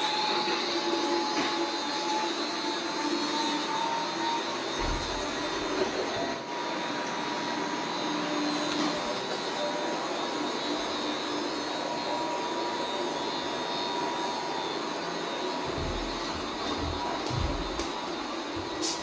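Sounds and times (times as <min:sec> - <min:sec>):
robot vacuum cleaner whirring: 0:00.0 - 0:19.0
thin steady whine: 0:15.7 - 0:19.0.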